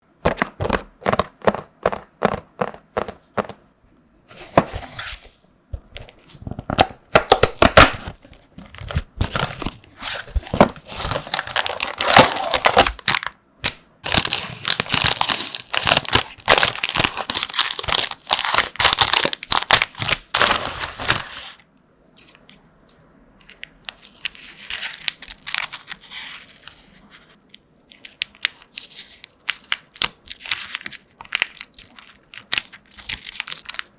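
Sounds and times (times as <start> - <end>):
packaging crinkling and tearing: 6.0 - 21.6, 23.4 - 27.0, 27.9 - 33.9.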